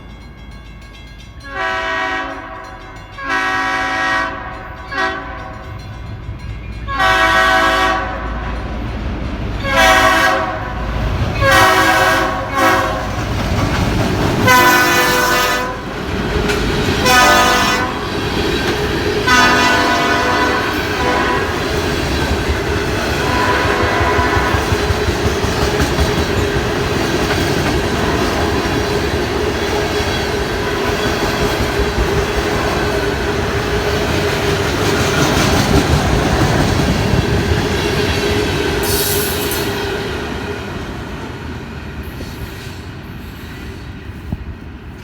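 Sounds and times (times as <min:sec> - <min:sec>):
train rumbling past: 0:00.0 - 0:45.0
train air horn chord: 0:01.4 - 0:05.7, 0:06.9 - 0:08.5, 0:09.6 - 0:10.8, 0:11.4 - 0:13.1, 0:14.4 - 0:15.9, 0:17.0 - 0:18.0, 0:19.3 - 0:21.6, 0:23.2 - 0:24.7
wheels squealing on rails: 0:23.1 - 0:40.0.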